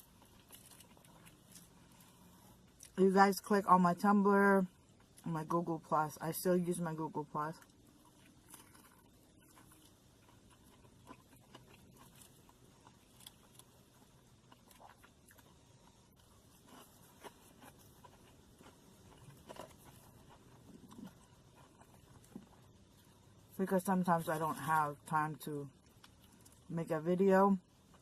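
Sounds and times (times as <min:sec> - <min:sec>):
quiet chewing: 0:00.0 - 0:03.0, 0:07.5 - 0:23.6, 0:25.7 - 0:26.7.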